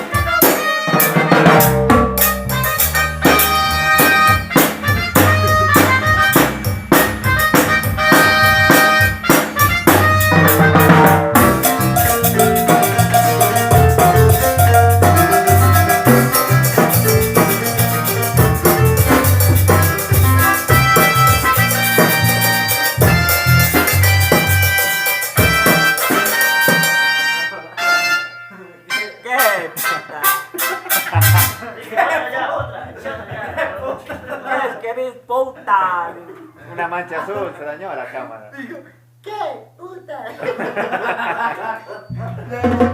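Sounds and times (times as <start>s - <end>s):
drum kit beat: 0.0s - 27.7s, 29.5s - 31.8s, 42.1s - 42.9s
cymbals: 0.0s - 28.3s
bass line: 1.0s - 27.0s, 31.0s - 31.7s
held high note: 1.6s - 30.0s.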